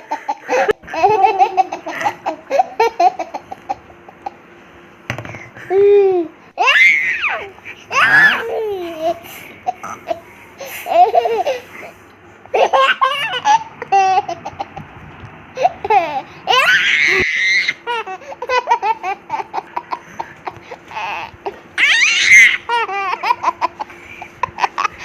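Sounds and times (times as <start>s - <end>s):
baby giggling: 0.0s - 4.4s, 7.3s - 10.2s, 10.8s - 11.7s, 12.5s - 14.8s, 15.6s - 25.0s
baby squealing with laughter: 6.6s - 8.7s, 12.6s - 14.0s, 16.5s - 19.1s, 20.9s - 23.9s.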